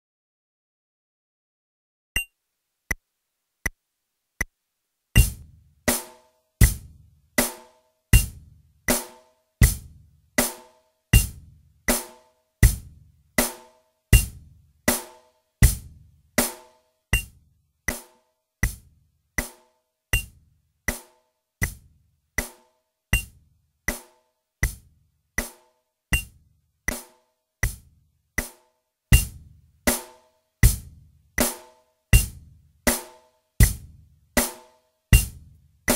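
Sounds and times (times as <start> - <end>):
drum kit playing slow beat: 5.2 - 7.6, 8.2 - 16.6, 29.1 - 34.6, 35.2 - 35.9.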